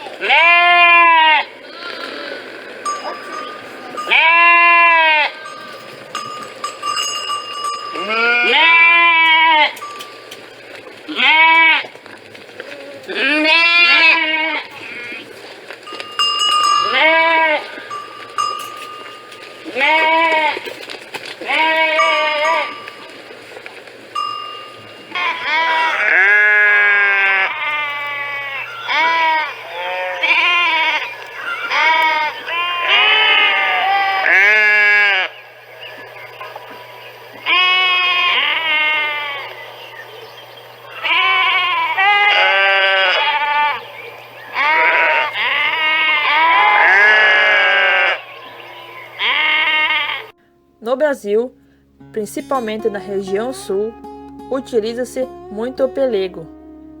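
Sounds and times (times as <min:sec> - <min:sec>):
sheep bleating: 0:00.0 - 0:12.0, 0:12.6 - 0:23.3, 0:24.2 - 0:35.6, 0:36.2 - 0:50.5.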